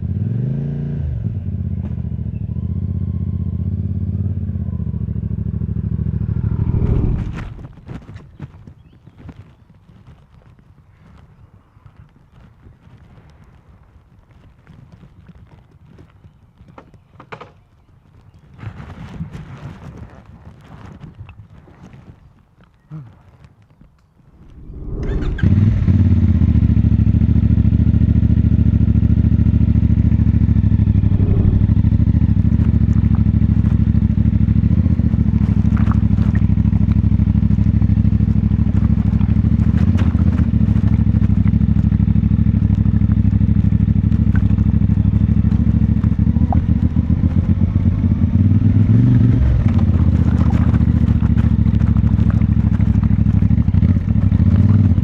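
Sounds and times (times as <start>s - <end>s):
motorcycle engine running: 1.1s - 8.0s, 24.3s - 55.0s
light clicks and clatter: 7.5s - 25.4s.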